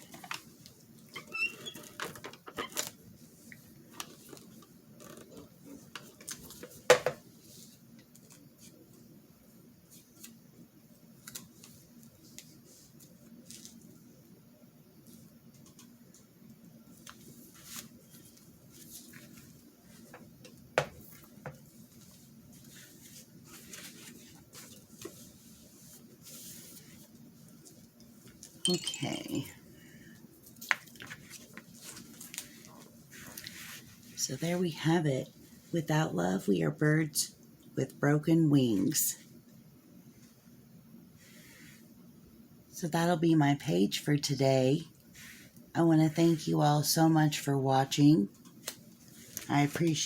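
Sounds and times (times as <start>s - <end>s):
paper and card rustling: 17.0s - 20.3s, 21.0s - 28.5s, 30.4s - 34.2s.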